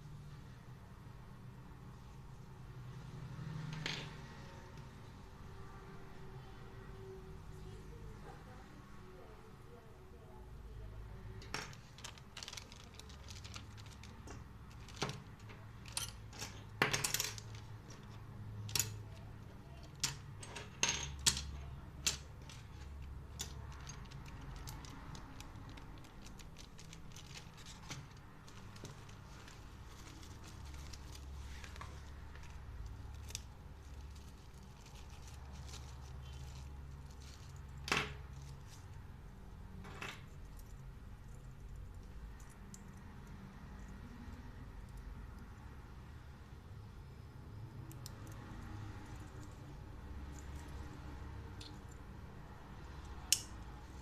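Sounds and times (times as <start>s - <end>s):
small parts clicking and clinking: 11.3s - 39.0s, 39.8s - 45.6s, 47.8s - 54.0s.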